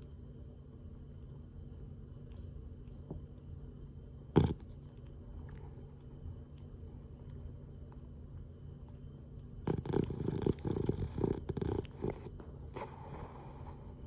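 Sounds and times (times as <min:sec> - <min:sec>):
dog breathing softly: 0:04.4 - 0:08.0, 0:09.6 - 0:14.0
dog snoring rattling: 0:09.6 - 0:14.0.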